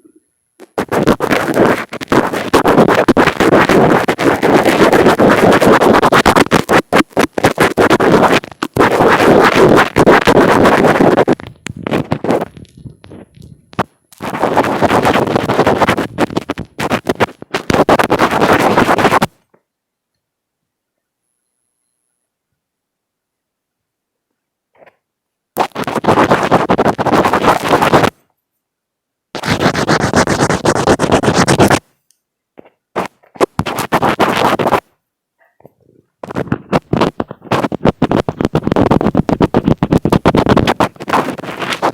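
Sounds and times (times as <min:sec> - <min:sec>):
fingers scratching on microphone: 0:00.6 - 0:19.4, 0:24.7 - 0:25.0, 0:25.6 - 0:28.2, 0:29.3 - 0:31.9, 0:32.6 - 0:41.9.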